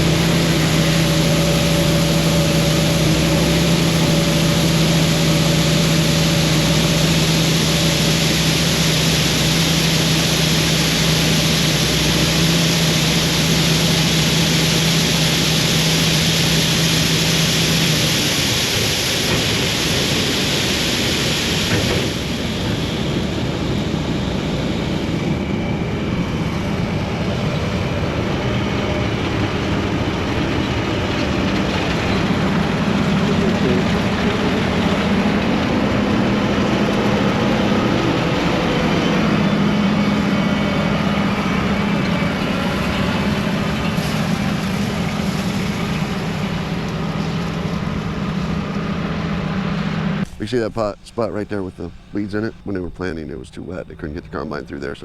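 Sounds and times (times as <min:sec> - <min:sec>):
loud rushing noise: 0:00.0 - 0:25.2
machinery engine drone: 0:00.0 - 0:55.0.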